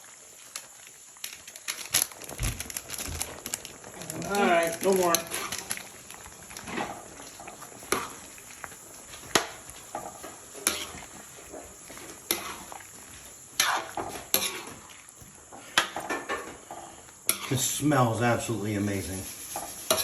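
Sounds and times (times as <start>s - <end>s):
faint steady hiss: 0.0s - 20.0s
spoon stirring in a pot: 3.7s - 20.0s.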